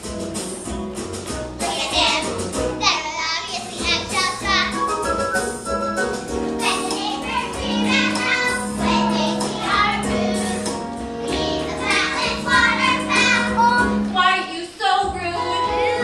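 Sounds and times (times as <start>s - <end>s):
musical accompaniment: 0.0s - 16.0s
children singing: 6.6s - 14.0s.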